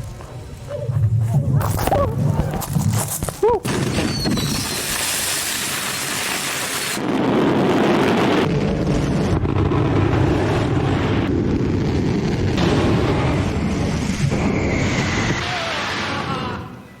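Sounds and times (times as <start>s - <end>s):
explosion crackling hiss: 3.6s - 16.7s
explosion low rumble: 7.0s - 16.6s.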